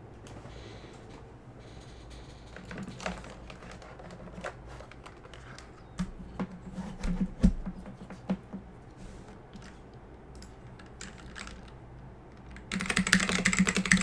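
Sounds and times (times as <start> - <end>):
mechanical keyboard typing: 10.4 - 14.0.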